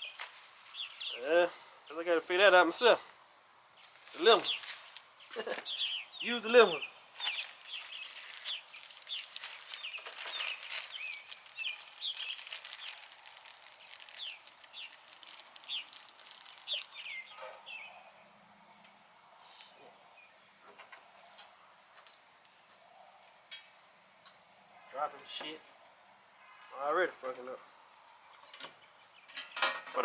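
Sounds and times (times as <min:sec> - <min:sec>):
bird chirping: 0:03.8 - 0:19.0, 0:27.6 - 0:29.8.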